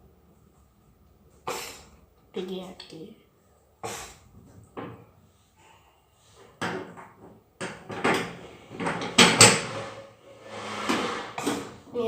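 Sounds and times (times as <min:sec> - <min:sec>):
household things knocking and clattering: 0:04.4 - 0:05.1, 0:06.4 - 0:10.0, 0:10.8 - 0:11.9.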